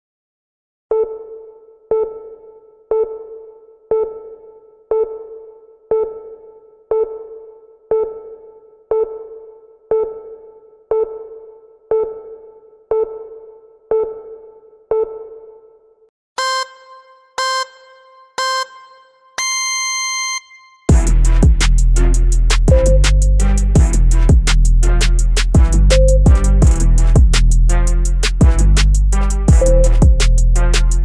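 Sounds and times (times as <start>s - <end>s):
electronic timer beeping: 16.4s - 20.8s, 22.7s - 23.4s, 29.6s - 30.4s.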